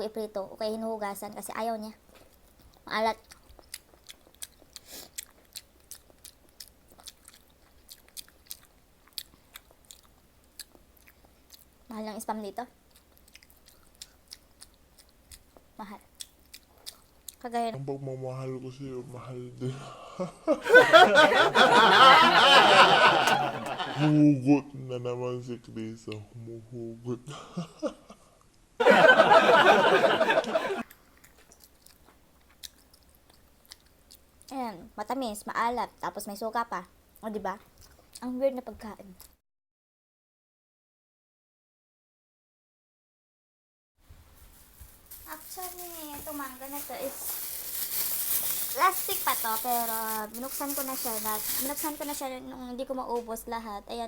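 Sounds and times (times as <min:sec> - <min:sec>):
person chewing with mouth clicks: 0:02.1 - 0:11.9, 0:12.8 - 0:17.5, 0:30.8 - 0:34.6, 0:37.1 - 0:38.3, 0:39.1 - 0:39.4
faint mouth clicks: 0:02.2 - 0:11.7.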